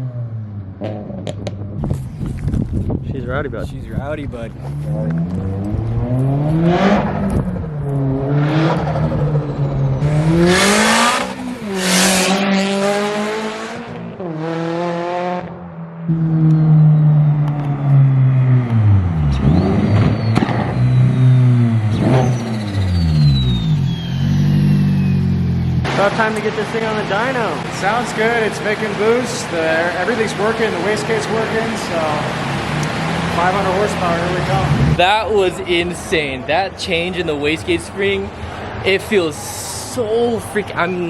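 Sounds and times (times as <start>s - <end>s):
car engine revving: 0.0s - 2.6s, 3.9s - 40.8s
thin falling whistle: 19.4s - 25.4s.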